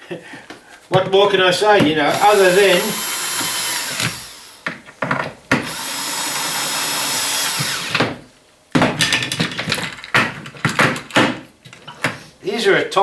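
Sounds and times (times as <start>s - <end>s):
handling knocks and clatter: 0.8s - 2.1s, 7.6s - 12.2s
small electric motor running: 2.1s - 4.6s, 5.6s - 8.0s.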